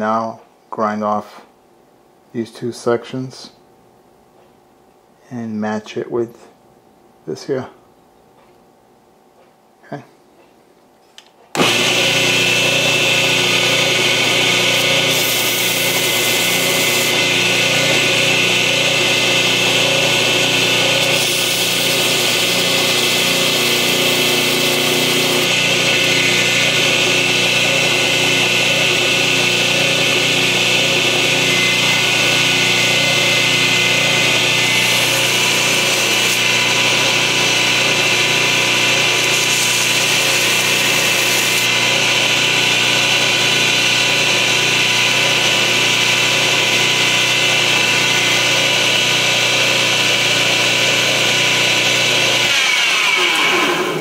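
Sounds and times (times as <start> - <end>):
belt grinder grinding steel: 11.6 - 54.0.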